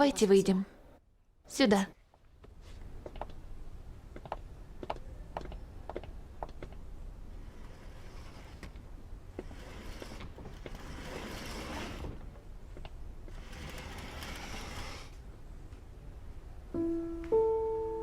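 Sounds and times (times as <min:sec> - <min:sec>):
soft rustling: 0:02.0 - 0:03.5
slow piano notes: 0:16.7 - 0:18.0.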